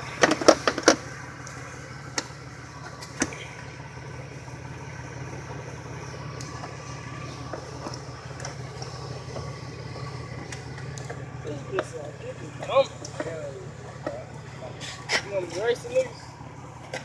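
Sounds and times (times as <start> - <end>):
atv engine idling: 0.0 - 17.0.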